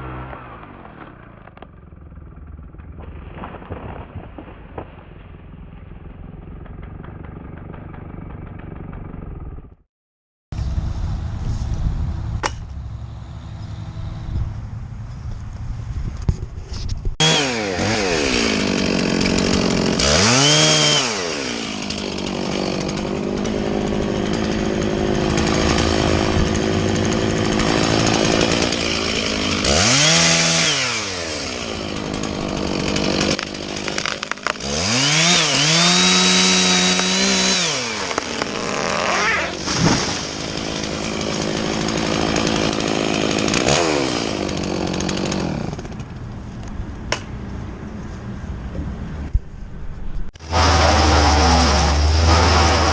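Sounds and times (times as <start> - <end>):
chainsaw revving: 6.0 - 9.6, 17.2 - 46.2, 50.4 - 52.9.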